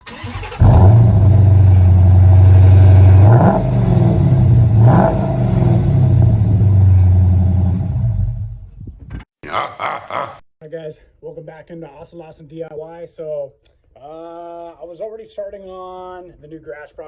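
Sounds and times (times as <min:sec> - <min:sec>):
vehicle engine idling and revving: 0:00.0 - 0:08.8.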